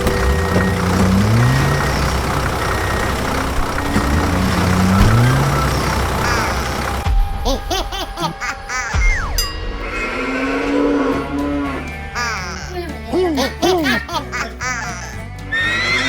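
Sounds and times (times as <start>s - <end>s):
tractor engine revving: 0.0s - 8.1s.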